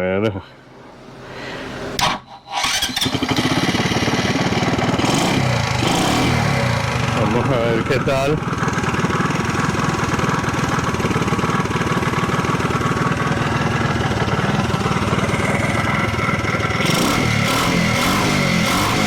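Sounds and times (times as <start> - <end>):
mini bike engine running: 2.6 - 19.0.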